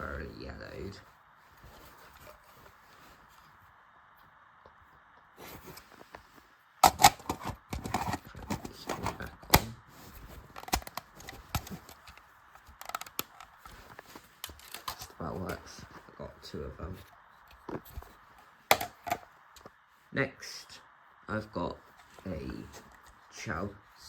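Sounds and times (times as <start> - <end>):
plastic clicks and knocks: 10.6 - 13.5, 18.7 - 19.2.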